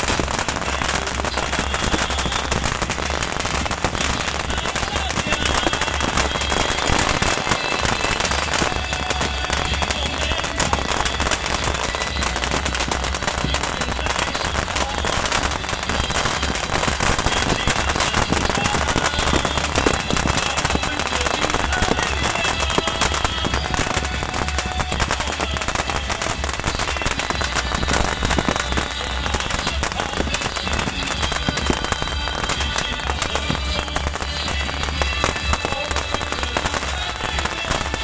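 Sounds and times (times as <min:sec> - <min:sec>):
crowd voices: 0:00.0 - 0:38.0
fireworks crackling rapid pops: 0:00.0 - 0:38.0.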